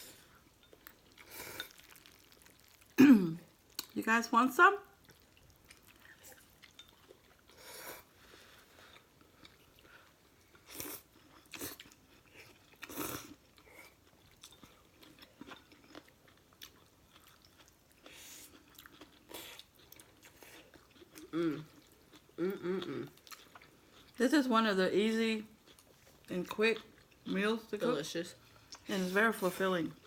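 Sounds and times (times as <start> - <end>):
chewing and biting noodles: 0.7 - 3.0, 10.5 - 24.2.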